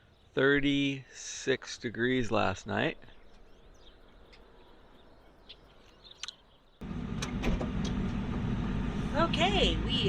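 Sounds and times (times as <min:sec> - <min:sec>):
faint bird chirps: 0:00.0 - 0:06.8
vehicle engine running low: 0:06.8 - 0:10.0.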